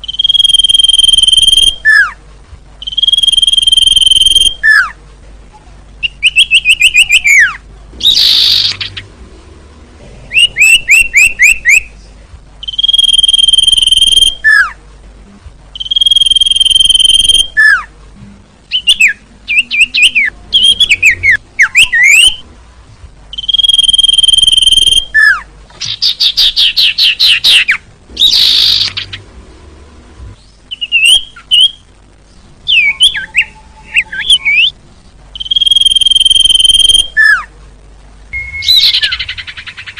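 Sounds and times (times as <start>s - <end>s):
bird whistles and trills: 6.0s - 9.0s, 12.6s - 14.8s, 18.7s - 22.4s, 23.4s - 29.2s, 30.7s - 31.8s, 35.4s - 37.5s, 38.4s - 39.9s.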